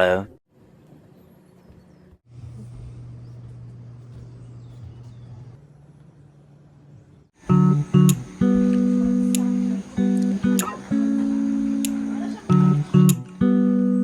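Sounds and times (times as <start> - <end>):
vehicle engine humming: 7.4 - 13.4.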